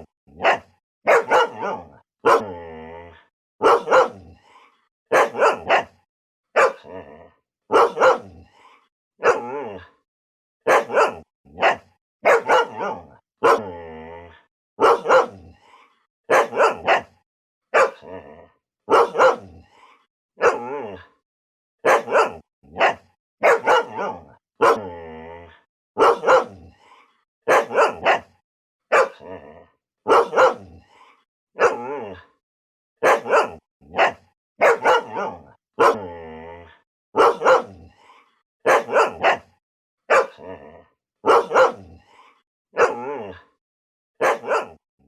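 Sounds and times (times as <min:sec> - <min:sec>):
dog growling bark: 0:00.0 - 0:21.2, 0:21.8 - 0:32.4, 0:33.0 - 0:43.6, 0:44.2 - 0:44.8
dog barking angrily: 0:00.3 - 0:02.5, 0:03.6 - 0:04.4, 0:05.1 - 0:06.0, 0:06.6 - 0:07.0, 0:07.7 - 0:08.6, 0:09.2 - 0:09.7, 0:10.6 - 0:13.8, 0:14.8 - 0:15.6, 0:16.3 - 0:18.1, 0:18.9 - 0:19.7, 0:20.4 - 0:20.8, 0:21.8 - 0:24.9, 0:26.0 - 0:26.7, 0:27.5 - 0:29.3, 0:30.0 - 0:30.8, 0:31.6 - 0:32.0, 0:33.0 - 0:36.1, 0:37.2 - 0:37.9, 0:38.6 - 0:40.5, 0:41.2 - 0:42.0, 0:42.7 - 0:43.1, 0:44.2 - 0:44.8.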